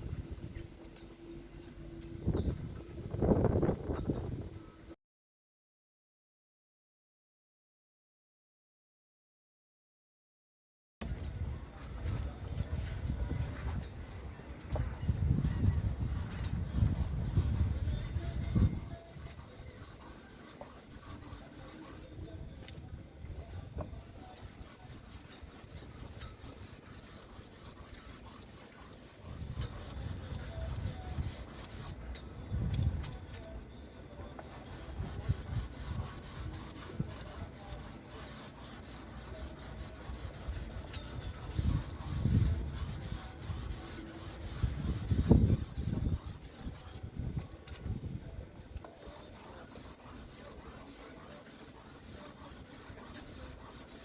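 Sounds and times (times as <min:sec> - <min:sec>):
sandpaper rubbing on wood: 0:11.8 - 0:22.8, 0:23.8 - 0:32.2, 0:34.4 - 0:47.8, 0:48.9 - 0:54.0.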